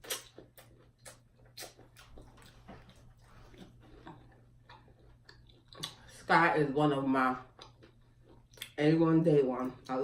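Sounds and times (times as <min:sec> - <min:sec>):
person chewing food: 0:00.0 - 0:06.2, 0:07.4 - 0:08.8.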